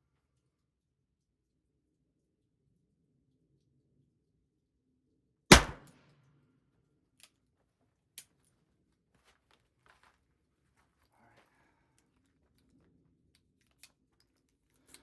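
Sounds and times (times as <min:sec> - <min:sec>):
revolver gunshot: 0:05.5 - 0:05.9
revolver metallic clicks: 0:05.5 - 0:05.9.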